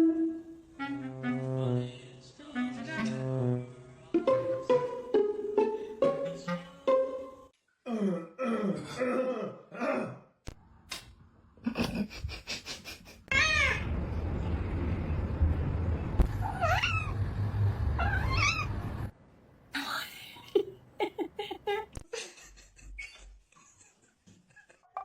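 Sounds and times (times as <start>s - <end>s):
cat meowing: 13.3s - 13.8s, 16.4s - 17.1s, 18.0s - 18.7s
steady low rumble: 13.8s - 18.0s.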